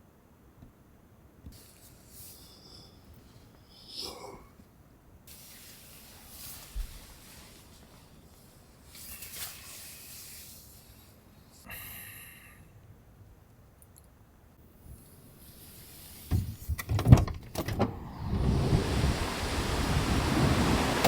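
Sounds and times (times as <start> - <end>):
hissing bursts: 17.8 - 21.0.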